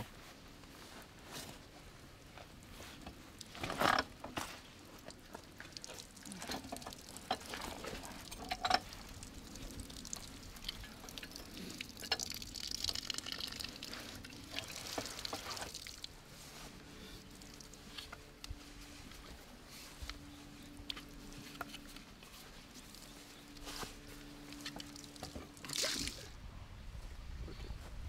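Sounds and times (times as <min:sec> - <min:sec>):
water pouring and trickling: 0:03.4 - 0:19.2, 0:22.7 - 0:26.3
metal clinks and knocks: 0:08.2 - 0:08.9.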